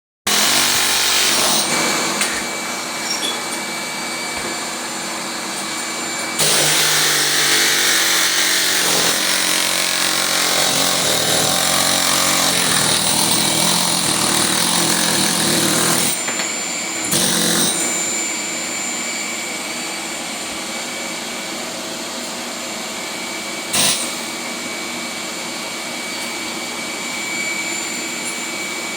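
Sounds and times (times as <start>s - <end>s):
pneumatic air hammer: 0.3s - 3.6s, 6.4s - 18.3s, 23.6s - 24.6s.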